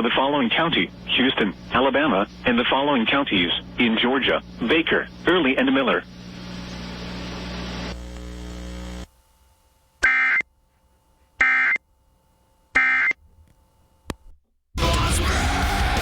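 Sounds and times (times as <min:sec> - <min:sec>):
steady hiss with hum: 0:00.0 - 0:14.4
buzzy digital data tones: 0:00.2 - 0:09.1, 0:10.0 - 0:10.5, 0:11.4 - 0:11.8, 0:12.7 - 0:13.2.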